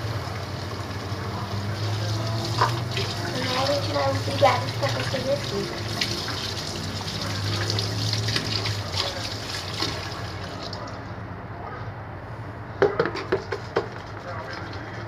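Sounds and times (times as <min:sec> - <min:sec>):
water running from tap: 0:00.0 - 0:10.9.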